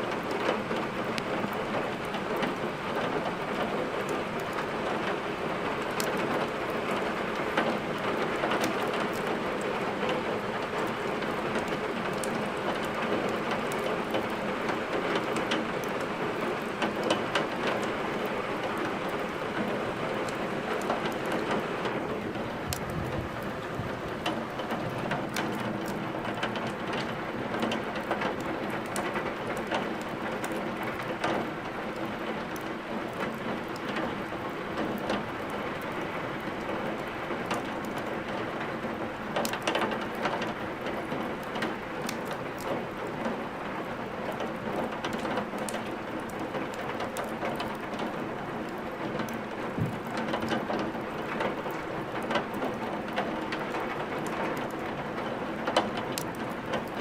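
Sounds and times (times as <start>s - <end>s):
steady rain: 0.0s - 57.0s
fire crackling and popping: 10.8s - 34.1s, 39.2s - 43.2s, 44.3s - 57.0s.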